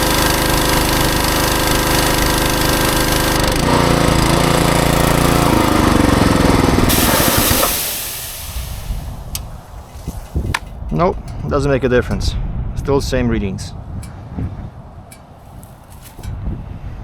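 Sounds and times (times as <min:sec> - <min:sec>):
pressure washer engine running: 0:00.0 - 0:10.7
high hiss of water spray: 0:04.8 - 0:10.6.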